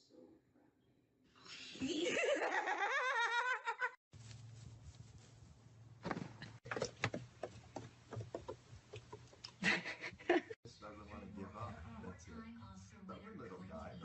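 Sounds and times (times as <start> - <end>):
sharp taps and knocks: 6.0 - 9.5.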